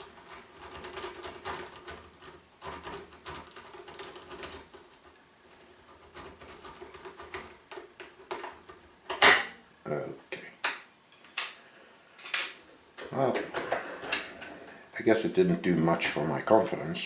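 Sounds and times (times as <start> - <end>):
lock pick teeth clicking over pins: 12.2 - 15.0.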